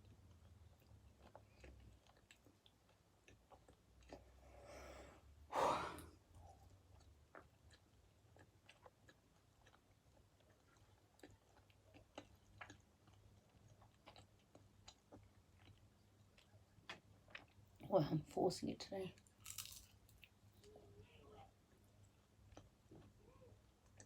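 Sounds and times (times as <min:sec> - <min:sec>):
person chewing: 0:00.0 - 0:04.4, 0:06.4 - 0:17.6, 0:19.2 - 0:20.4, 0:22.1 - 0:23.2
loud sigh: 0:05.5 - 0:06.1.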